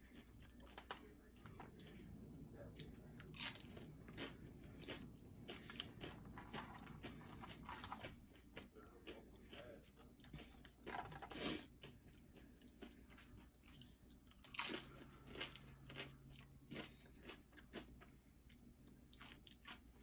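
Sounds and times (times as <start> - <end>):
chewing: 0.0 - 2.0, 2.6 - 20.0
crunching chip bites: 3.3 - 9.2.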